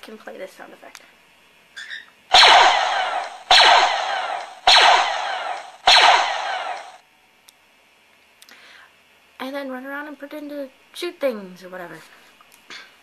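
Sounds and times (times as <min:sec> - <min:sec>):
blaster shot sound effects: 0:02.3 - 0:07.0.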